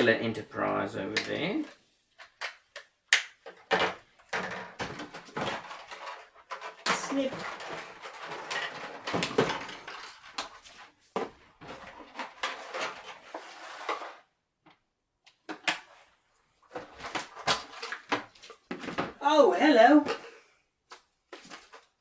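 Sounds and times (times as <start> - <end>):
plastic packaging rustling: 4.4 - 14.3.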